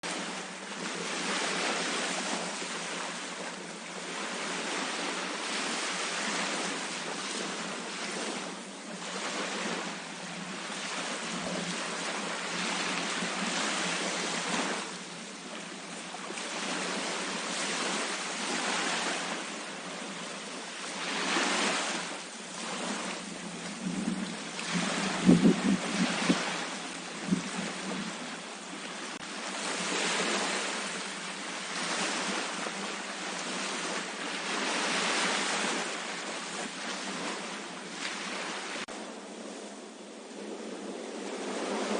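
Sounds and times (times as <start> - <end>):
ocean waves breaking: 0.0 - 41.9.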